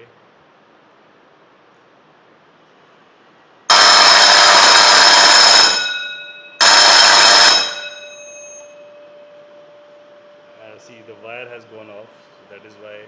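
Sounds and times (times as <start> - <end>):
electric gong bell ringing: 3.7 - 10.5.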